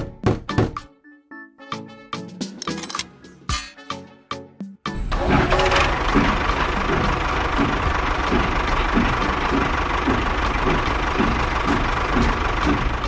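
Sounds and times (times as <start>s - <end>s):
motor whirring: 5.0s - 9.5s
low knocking: 5.0s - 13.0s.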